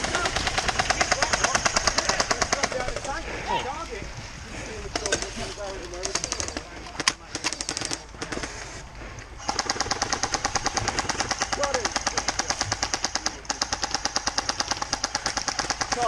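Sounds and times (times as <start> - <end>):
airsoft gun firing full auto: 9.4 - 16.0.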